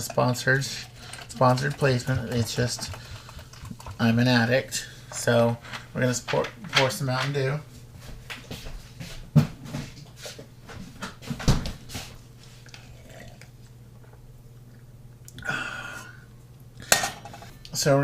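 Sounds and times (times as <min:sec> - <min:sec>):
soda pouring rush: 0:00.0 - 0:05.2.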